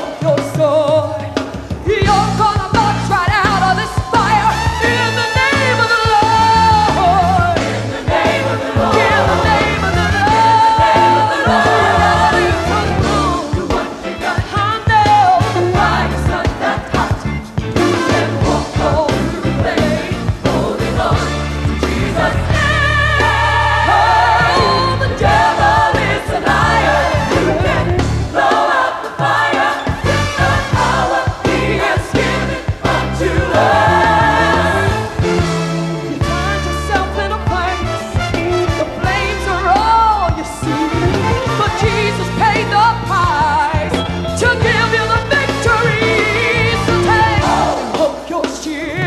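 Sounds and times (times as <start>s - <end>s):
woman singing gospel with vibrato: 0.0s - 17.3s, 22.0s - 30.0s, 36.3s - 49.0s
band with steady bass: 0.0s - 49.0s
drums: 0.0s - 49.0s
choir singing: 6.1s - 35.5s, 44.6s - 49.0s.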